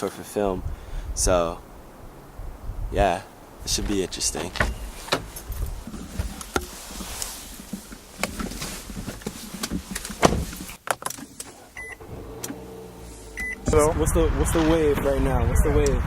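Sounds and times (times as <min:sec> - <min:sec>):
low rumble: 0:00.5 - 0:06.4, 0:13.0 - 0:16.0
clicks and knocks of handling: 0:04.3 - 0:11.7.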